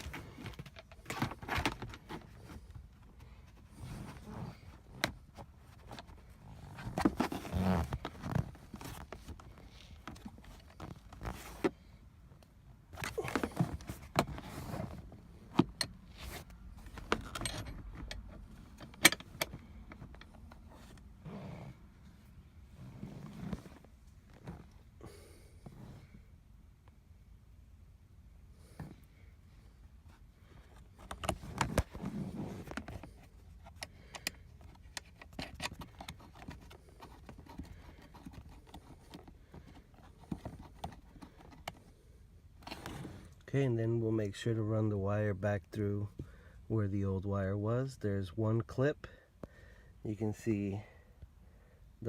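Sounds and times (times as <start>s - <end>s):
seat belt buckle clicking and rattling: 16.9s - 20.7s, 30.8s - 41.9s
metallic clinks of seat belt buckle: 17.2s - 19.5s.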